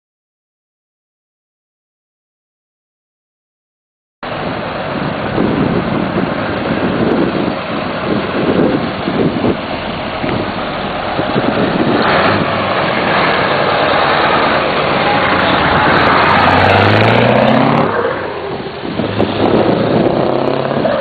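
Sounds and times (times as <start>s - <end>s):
truck diesel engine accelerating: 4.3s - 21.0s.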